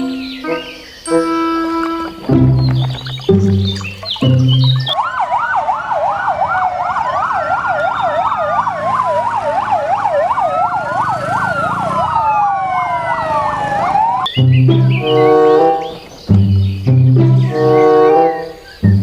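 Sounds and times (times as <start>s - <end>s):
ambulance siren yelp: 0.0s - 16.2s, 16.9s - 19.0s
siren wail: 3.8s - 16.2s, 17.2s - 18.6s.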